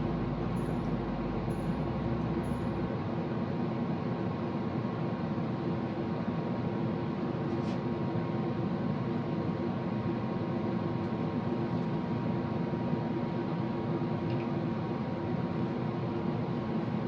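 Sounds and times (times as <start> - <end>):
mechanical whir with low hum: 0.0 - 17.0.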